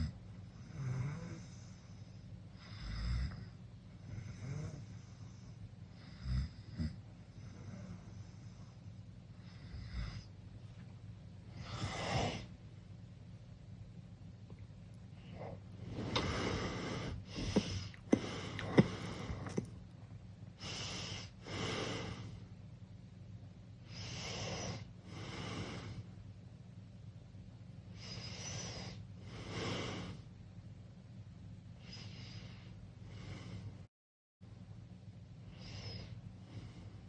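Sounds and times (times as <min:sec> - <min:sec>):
person snoring: 0:00.0 - 0:01.8, 0:15.3 - 0:19.7.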